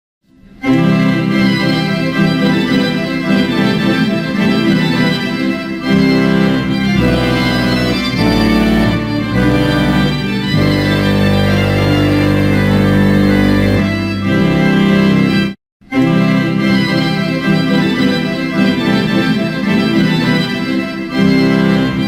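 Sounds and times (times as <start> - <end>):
organ playing held chords: 5.5 - 15.4
deep organ bass notes: 5.8 - 15.5.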